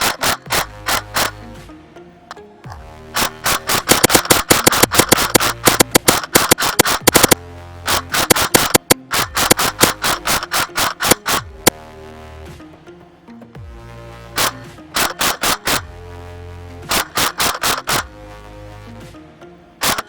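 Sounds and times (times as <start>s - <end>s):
fast percussive hits: 0.0s - 1.4s, 2.7s - 11.8s, 14.4s - 16.0s, 16.8s - 18.1s
held tones: 0.0s - 1.7s, 2.3s - 11.9s, 14.4s - 16.0s, 16.8s - 18.1s.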